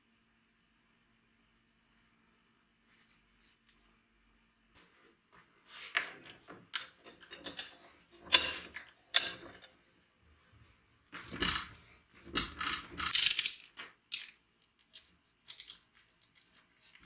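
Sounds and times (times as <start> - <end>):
scraping: 5.8 - 9.8, 11.2 - 13.4.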